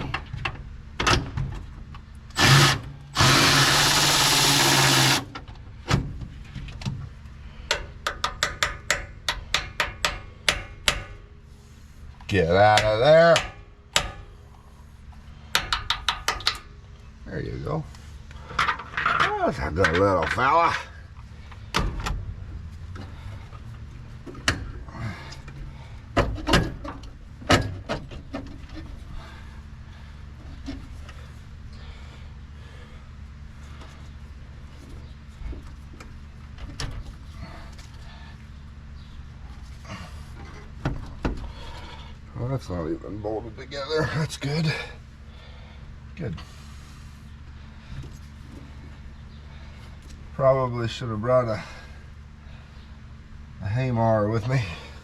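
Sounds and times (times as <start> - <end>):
steady low hum: 0.0 - 55.0
power drill running: 2.4 - 5.3
tools and parts knocking: 7.7 - 11.2, 15.5 - 16.6.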